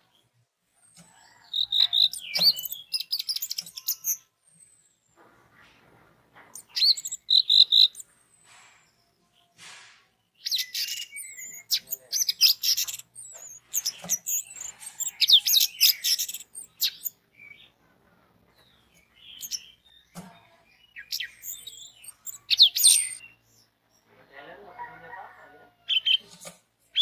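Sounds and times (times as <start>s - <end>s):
thrush singing whistles and chirps: 1.4s - 4.9s, 6.6s - 8.1s, 10.4s - 17.6s, 20.8s - 24.0s.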